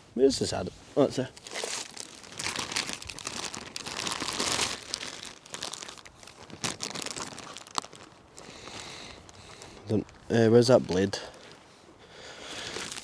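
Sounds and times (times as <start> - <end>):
packing material rustling: 1.3 - 9.8, 12.5 - 13.0.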